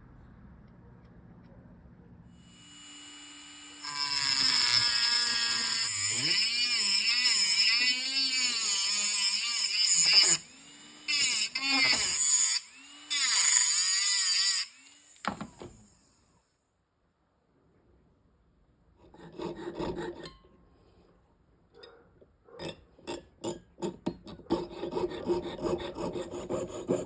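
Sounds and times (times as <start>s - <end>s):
small electric power tool running: 2.5s - 16.1s.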